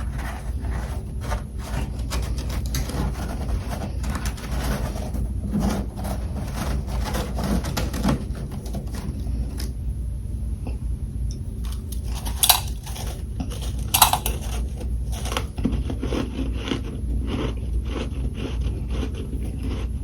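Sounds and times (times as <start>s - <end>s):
crunching and chewing frost: 0.0s - 9.8s, 11.6s - 20.0s
steady low hum: 0.0s - 20.0s.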